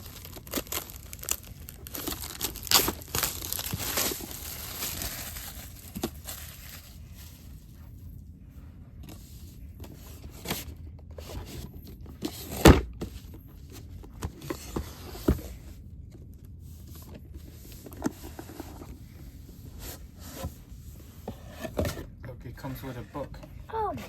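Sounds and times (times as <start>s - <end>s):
cardboard packaging rustling: 0.0s - 7.8s.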